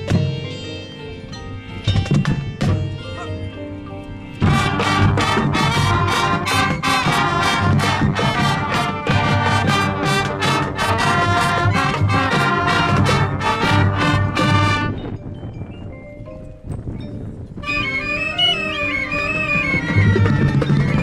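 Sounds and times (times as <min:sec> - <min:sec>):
drum beat: 0:04.4 - 0:14.9
marching band brass: 0:04.4 - 0:15.2, 0:17.6 - 0:21.0.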